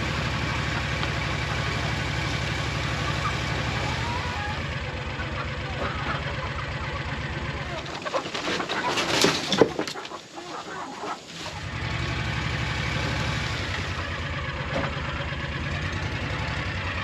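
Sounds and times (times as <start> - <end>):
vehicle engine idling: 0.0 - 8.4, 10.2 - 17.0
sharp knocks and rattles: 7.9 - 10.2.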